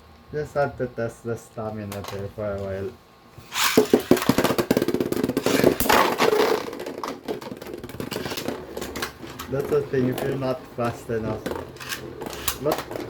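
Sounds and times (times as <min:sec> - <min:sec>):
plastic tops clicking and rattling: 0:03.5 - 0:13.0.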